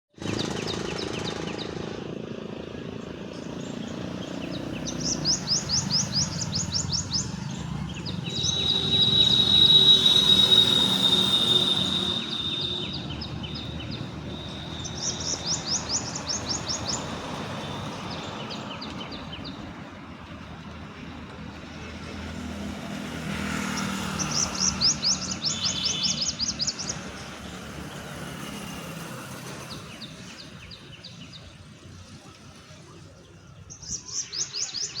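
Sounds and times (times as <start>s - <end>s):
low rumble of traffic: 0.2s - 35.0s
bird high trill: 8.1s - 17.1s.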